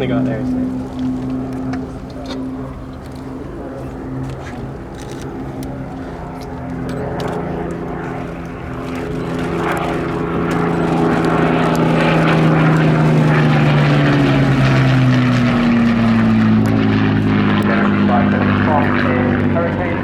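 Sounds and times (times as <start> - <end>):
propeller aircraft drone: 0.0 - 20.0.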